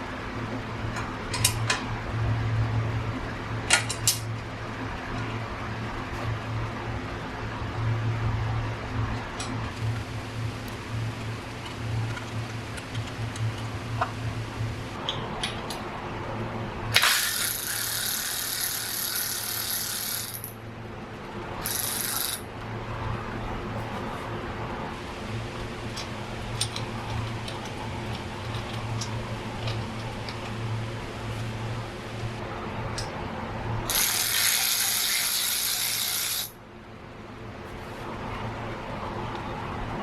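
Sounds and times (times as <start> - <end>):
tools clicking and ratcheting: 17.0 - 20.6, 21.6 - 22.4, 33.9 - 36.6
loud hissing bursts: 33.9 - 36.6.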